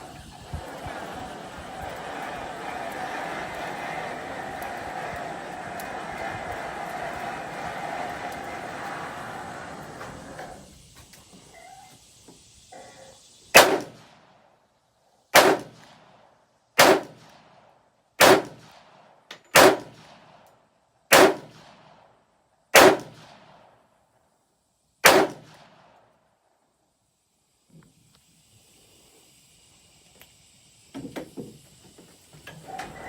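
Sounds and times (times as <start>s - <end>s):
gunshots with echo: 13.6s - 14.0s, 15.4s - 15.8s, 16.8s - 17.2s, 18.2s - 18.6s, 19.6s - 20.0s, 21.1s - 21.6s, 22.8s - 23.3s, 25.0s - 25.5s.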